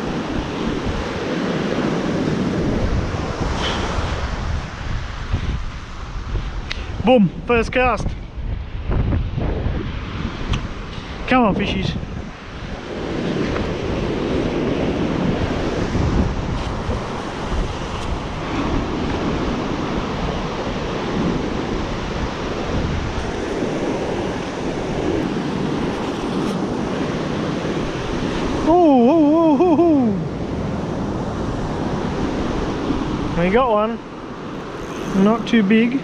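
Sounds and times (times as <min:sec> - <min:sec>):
surf breaking on beach: 0:00.0 - 0:08.0, 0:08.9 - 0:36.0
wind buffeting microphone: 0:00.0 - 0:36.0
wavering voice-like tone: 0:28.6 - 0:30.4.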